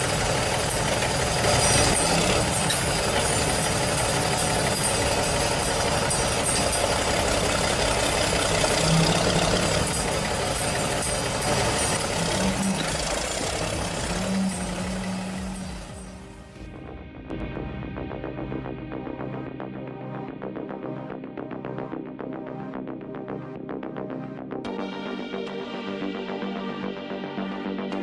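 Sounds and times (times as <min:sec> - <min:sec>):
heavy machine engine running: 0:00.0 - 0:16.7.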